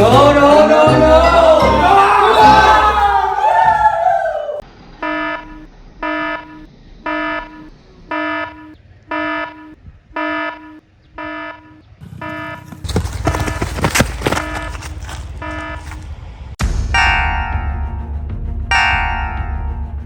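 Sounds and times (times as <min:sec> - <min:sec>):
alarm buzzer beeping: 0:05.0 - 0:12.9, 0:15.4 - 0:15.9.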